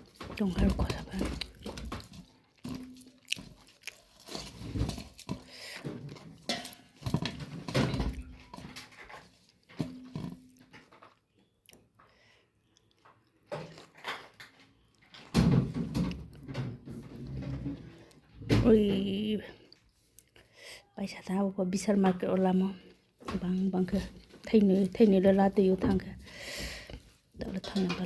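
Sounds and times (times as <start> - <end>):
chewing and crunching fried food: 0.0 - 7.4, 8.2 - 15.1.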